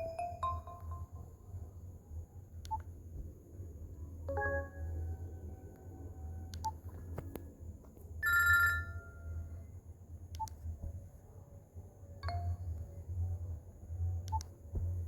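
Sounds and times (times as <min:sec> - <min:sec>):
bell-like phone ring: 0:00.0 - 0:01.2, 0:08.2 - 0:09.4
chime-like phone ringtone: 0:00.0 - 0:01.3, 0:08.2 - 0:09.4
low steady hum: 0:00.0 - 0:15.0
clicks: 0:10.3 - 0:10.7.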